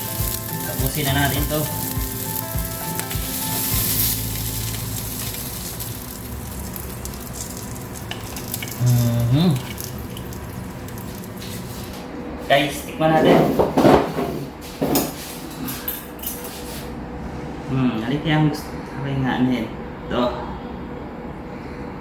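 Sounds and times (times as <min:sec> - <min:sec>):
fish sizzling on grill pan: 0:00.0 - 0:12.0.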